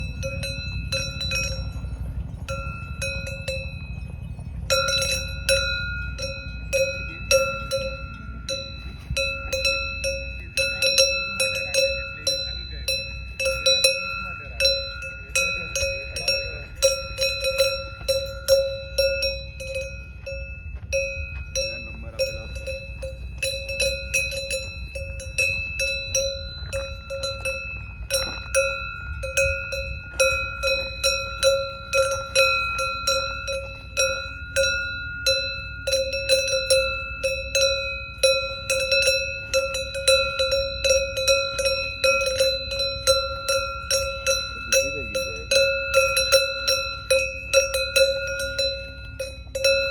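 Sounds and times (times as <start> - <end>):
cowbells clanking: 0.0 - 49.9.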